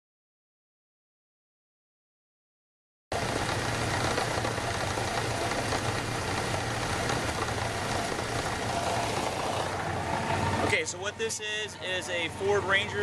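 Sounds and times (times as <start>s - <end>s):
engine idling: 3.1s - 13.0s.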